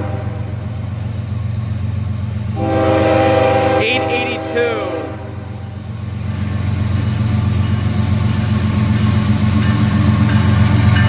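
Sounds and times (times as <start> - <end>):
diesel locomotive engines passing: 0.0 - 11.0.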